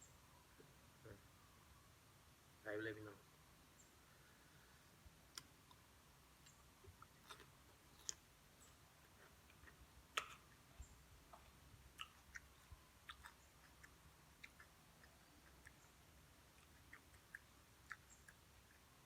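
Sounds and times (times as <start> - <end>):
eating clicks and ticks: 5.3 - 19.0.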